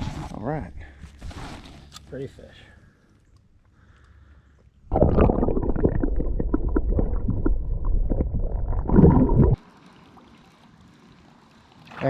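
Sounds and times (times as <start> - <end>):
muffled gurgling water: 4.9 - 9.6.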